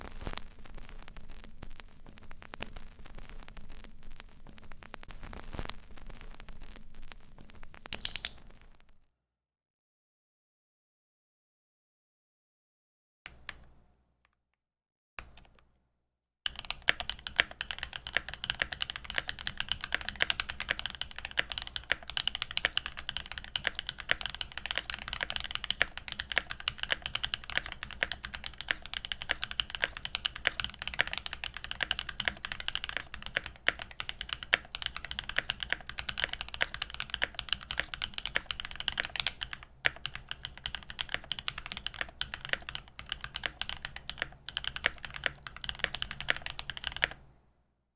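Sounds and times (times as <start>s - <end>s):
mechanical keyboard typing: 7.9s - 8.4s, 16.5s - 47.2s.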